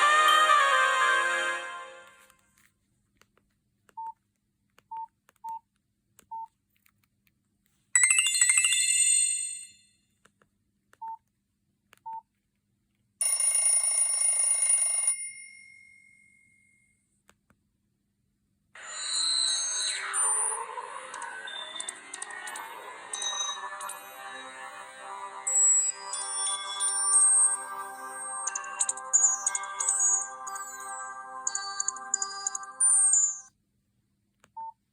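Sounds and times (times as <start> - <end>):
phone ringtones: 13.2 - 15.4, 18.8 - 24.6, 25.4 - 33.5.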